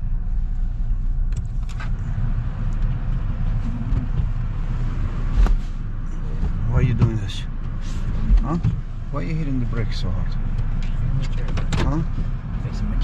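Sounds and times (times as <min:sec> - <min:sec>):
car engine and road rumble: 0:00.0 - 0:13.0.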